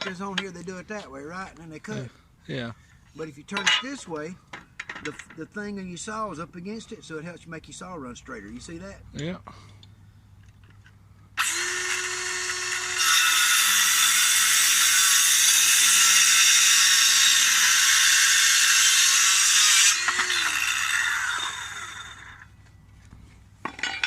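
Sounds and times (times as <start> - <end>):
circular saw cutting plywood: 11.4 - 22.5.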